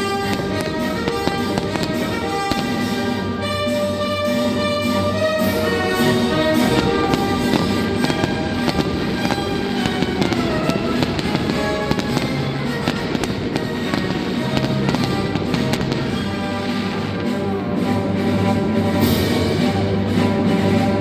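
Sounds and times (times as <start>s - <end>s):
fireworks banging and crackling: 0.0s - 21.0s
orchestral music: 0.0s - 21.0s.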